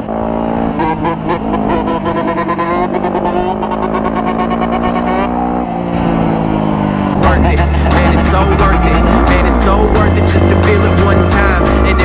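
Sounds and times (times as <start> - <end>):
dirt bike engines revving: 0.0 - 12.0
hip-hop music: 7.1 - 12.0.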